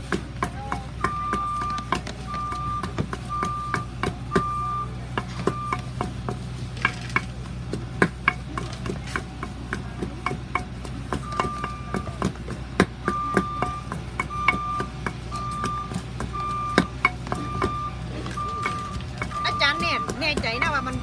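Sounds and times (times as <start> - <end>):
sharp clicks and knocks: 0.0 - 21.0
short electronic beeps: 1.0 - 5.9, 11.2 - 12.2, 13.0 - 21.0.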